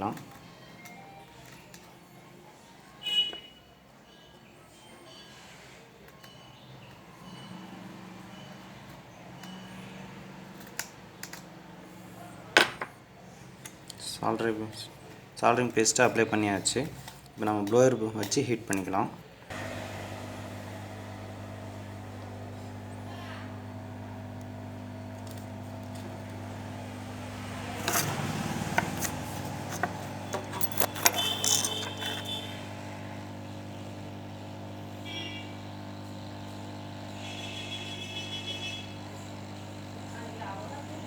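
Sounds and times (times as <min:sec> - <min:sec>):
hot-air blower humming: 0:19.5 - 0:41.0
clattering and handling clicks: 0:28.8 - 0:32.4.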